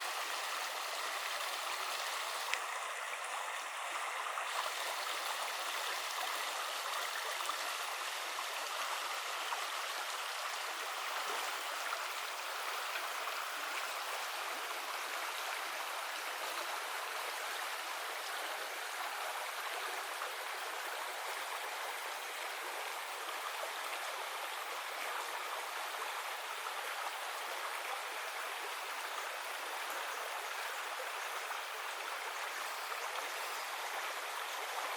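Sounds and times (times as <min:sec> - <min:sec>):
river water flowing: 0:00.0 - 0:34.9.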